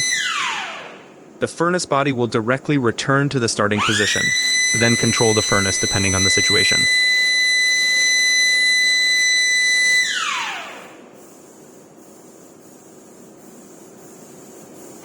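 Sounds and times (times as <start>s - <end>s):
electric motor whining: 0.0s - 1.1s, 3.8s - 11.0s
low steady hum: 0.0s - 15.0s.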